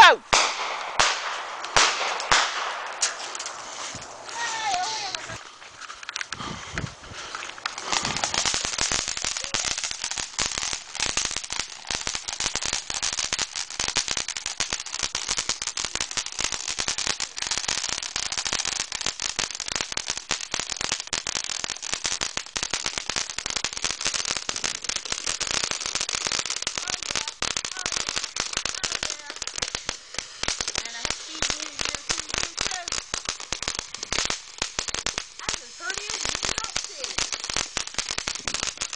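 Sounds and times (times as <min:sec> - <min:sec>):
fireworks crackling: 0:00.0 - 0:38.9.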